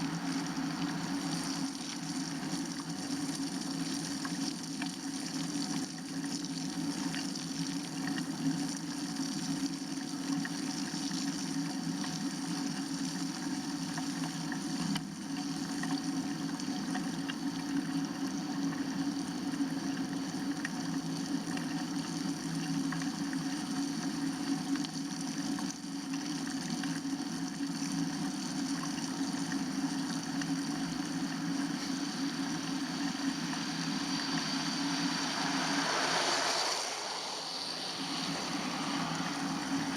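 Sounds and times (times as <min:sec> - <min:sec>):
bicycle wind and tyre rush: 0:34.2 - 0:39.9.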